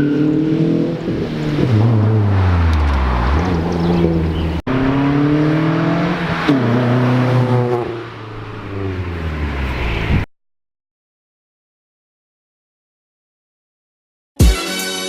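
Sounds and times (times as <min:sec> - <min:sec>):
car engine revving: 0:00.0 - 0:10.3.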